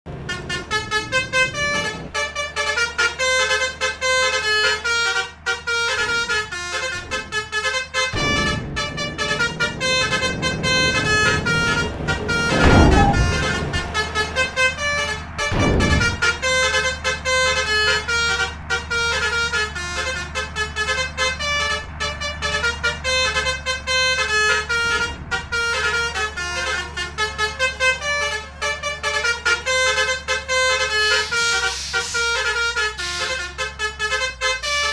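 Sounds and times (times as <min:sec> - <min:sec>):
engine and road noise: 0:00.0 - 0:34.9
musical vehicle horns: 0:00.1 - 0:34.9.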